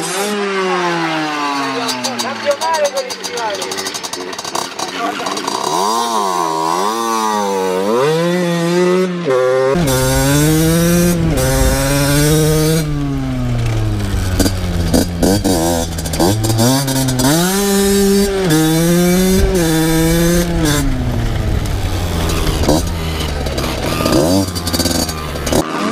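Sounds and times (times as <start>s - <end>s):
motocross bike engine revving: 0.0s - 25.9s
low rumble: 9.8s - 25.6s.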